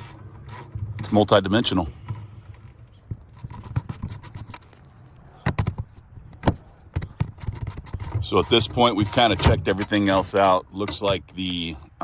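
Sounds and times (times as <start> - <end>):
metal fasteners being handled: 2.1 - 11.1.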